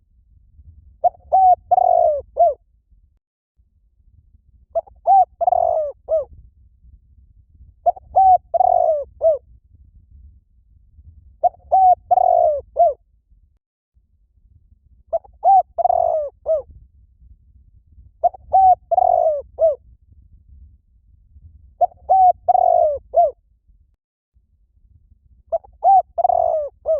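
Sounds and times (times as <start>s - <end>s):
dove cooing: 1.0s - 2.6s, 4.8s - 6.3s, 7.9s - 9.4s, 11.4s - 13.0s, 15.1s - 16.6s, 18.2s - 19.8s, 21.8s - 23.4s, 25.5s - 26.9s.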